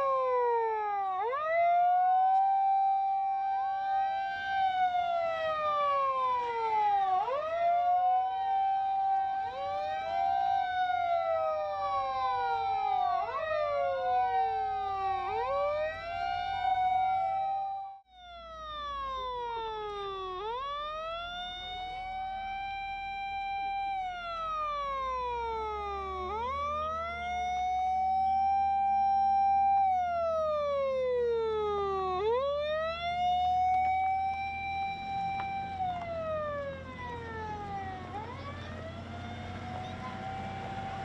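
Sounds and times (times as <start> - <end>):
fire engine sirens wailing: 0.0 - 41.0.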